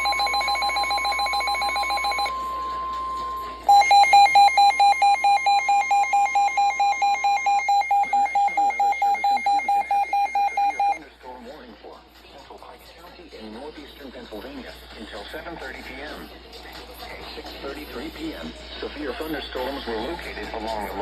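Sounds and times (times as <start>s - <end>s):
rapid alert beeping: 0.0s - 2.3s, 3.7s - 11.0s
steady warning alarm tone: 3.2s - 11.0s.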